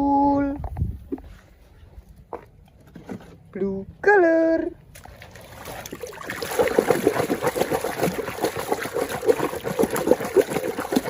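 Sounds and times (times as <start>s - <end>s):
water trickling and splashing: 4.9s - 11.0s.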